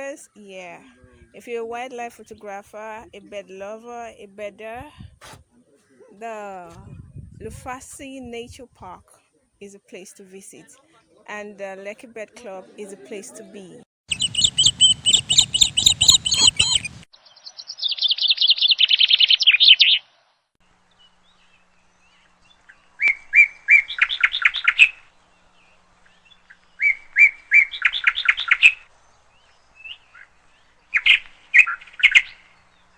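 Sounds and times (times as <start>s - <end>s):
songbirds singing trills: 14.1s - 20.0s, 20.8s - 32.9s
short bird calls: 14.1s - 20.1s.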